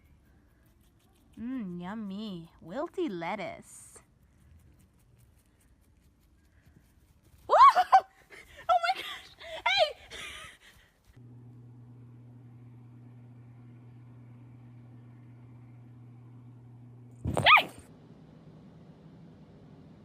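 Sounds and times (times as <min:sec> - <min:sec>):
steady low hum: 0:08.4 - 0:20.0.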